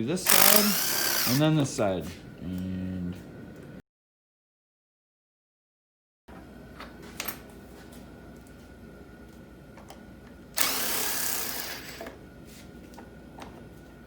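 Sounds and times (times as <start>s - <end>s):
power tool running: 0.0s - 1.7s, 10.5s - 12.2s
tool clicking on metal: 0.2s - 1.5s, 10.6s - 12.2s.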